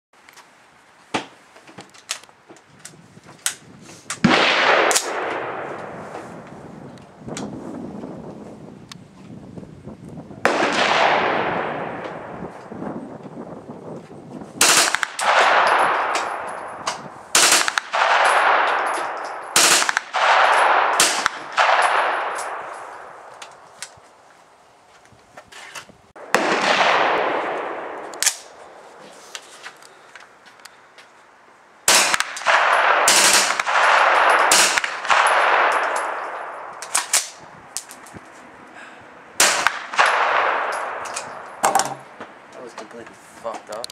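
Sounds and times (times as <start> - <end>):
rifle shots with echo: 4.2 - 6.4, 10.4 - 12.7, 14.6 - 23.6, 26.2 - 28.9, 31.9 - 37.4, 39.4 - 41.8.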